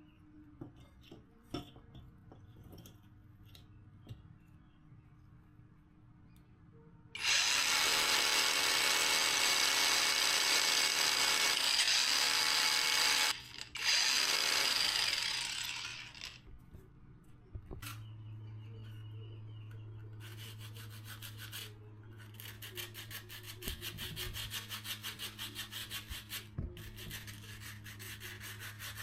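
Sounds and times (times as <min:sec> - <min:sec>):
power tool whining: 0:07.2 - 0:16.4.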